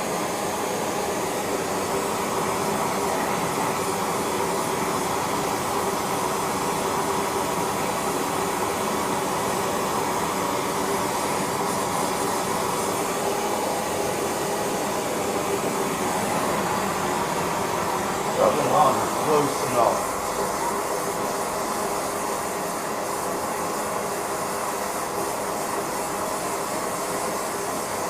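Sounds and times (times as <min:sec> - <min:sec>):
gas burner rushing drone: 0:00.0 - 0:28.0.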